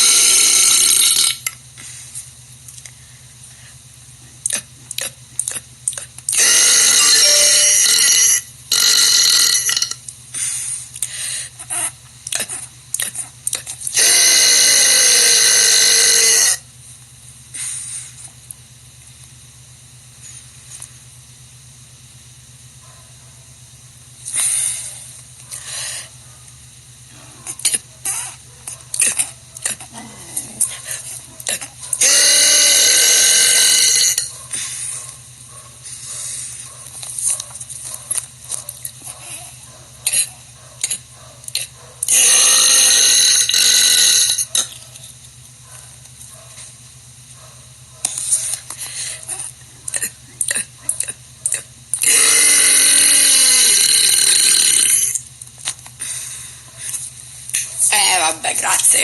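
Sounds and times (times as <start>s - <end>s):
woman burping loudly: 6.3s - 10.0s, 29.0s - 34.3s, 41.6s - 44.8s, 52.0s - 55.2s.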